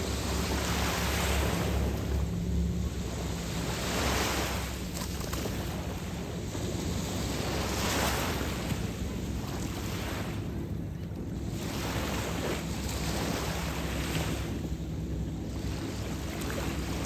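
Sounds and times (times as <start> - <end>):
waves washing onto shore: 0.0 - 17.0
wind rumbling on microphone: 0.0 - 17.0.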